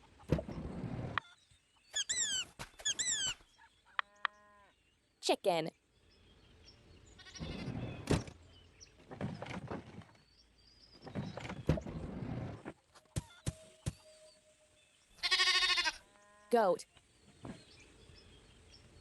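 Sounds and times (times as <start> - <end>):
goat bleating: 7.2 - 7.6, 15.2 - 16.5.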